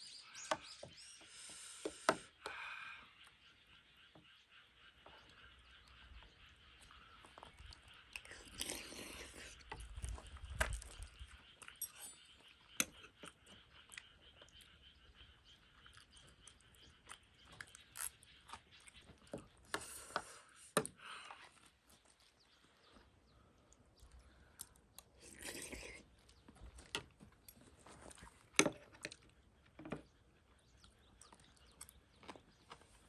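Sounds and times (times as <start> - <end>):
chewing noodles: 7.4 - 12.0, 15.7 - 19.0, 23.7 - 26.4.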